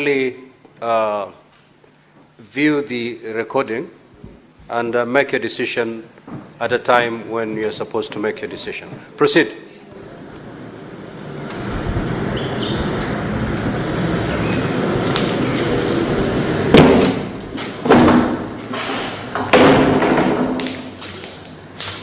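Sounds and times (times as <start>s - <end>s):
steady noisy din: 10.0s - 22.0s
loud heavy bangs: 14.6s - 21.0s.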